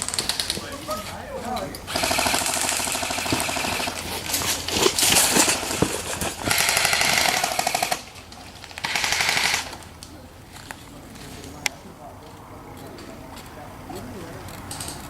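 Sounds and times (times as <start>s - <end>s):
airsoft guns firing bursts: 0.0s - 1.2s, 1.8s - 10.0s.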